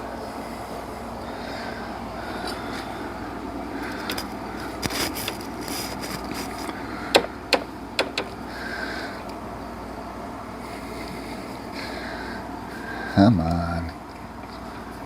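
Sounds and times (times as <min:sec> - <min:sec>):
low background hum: 0:00.0 - 0:15.0
tools clicking and knocking: 0:07.1 - 0:08.4.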